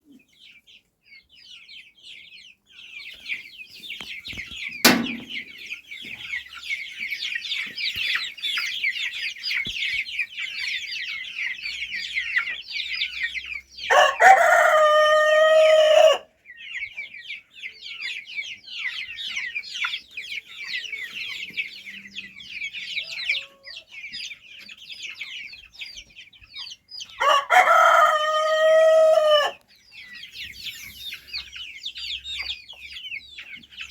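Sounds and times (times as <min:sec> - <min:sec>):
chickens clucking and chirping: 0:00.0 - 0:33.9
sharp knock: 0:04.9 - 0:05.6
rooster crowing: 0:13.9 - 0:16.3, 0:27.2 - 0:29.6.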